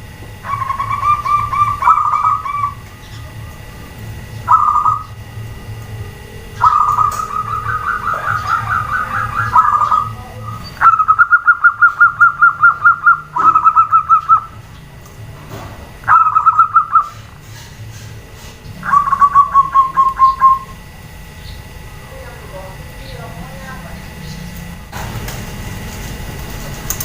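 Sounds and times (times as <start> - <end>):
doves cooing: 0.0 - 24.9.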